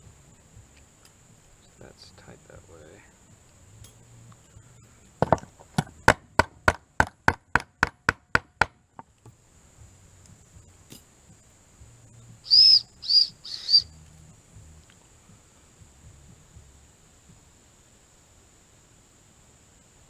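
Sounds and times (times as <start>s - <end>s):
high arching chirps: 10.0s - 16.9s.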